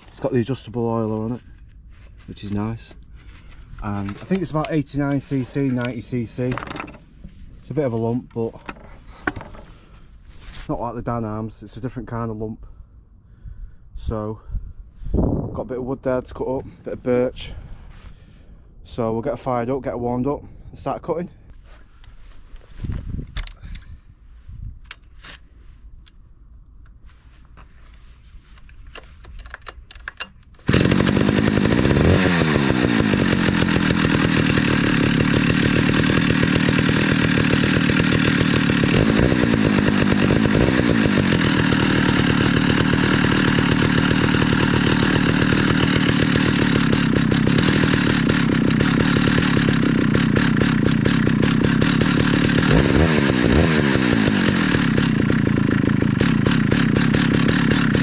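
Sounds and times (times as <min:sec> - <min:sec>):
chainsaw engine running: 0:00.0 - 0:07.0, 0:30.6 - 0:58.0.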